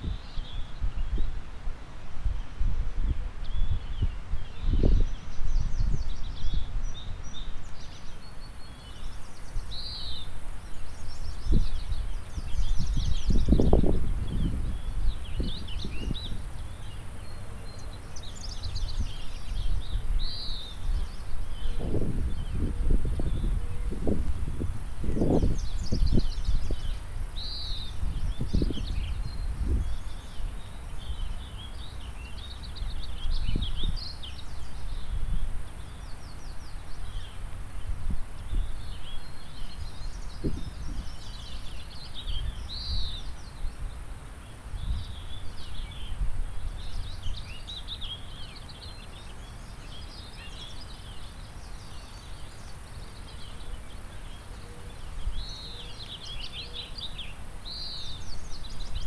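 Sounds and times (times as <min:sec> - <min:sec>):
wind buffeting microphone: 0:00.0 - 0:07.9, 0:10.9 - 0:31.8, 0:32.7 - 0:44.0, 0:44.6 - 0:48.0.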